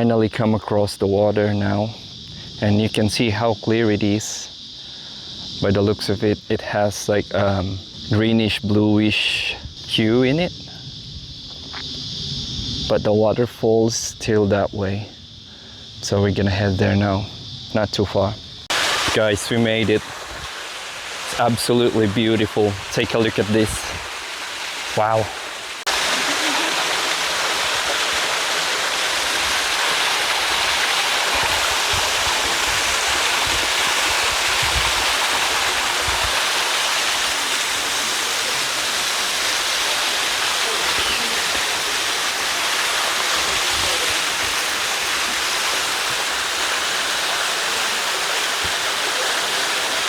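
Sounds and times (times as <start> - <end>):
waterfall splashing into pool: 18.7 - 50.0.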